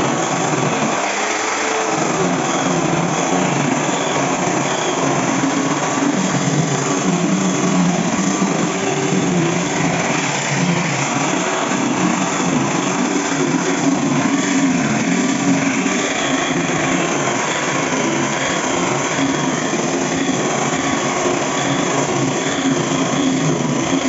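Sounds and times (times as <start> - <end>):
angle grinder cutting wood: 0.0 - 24.0.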